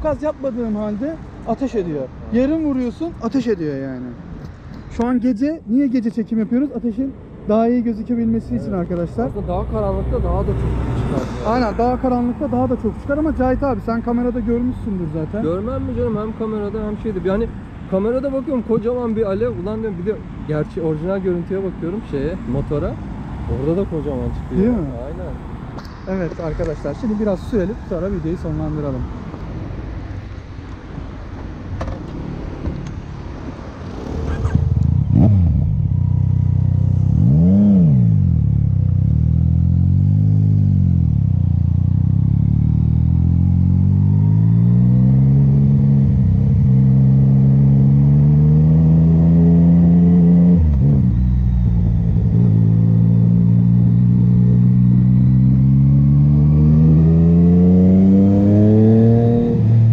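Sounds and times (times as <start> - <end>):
motorcycle engine accelerating: 33.8 - 59.9.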